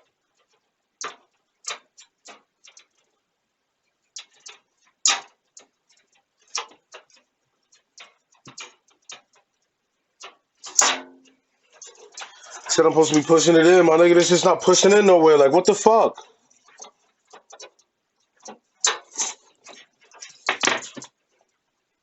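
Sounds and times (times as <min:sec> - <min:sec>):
clicks and knocks of computer parts: 0:20.1 - 0:21.2.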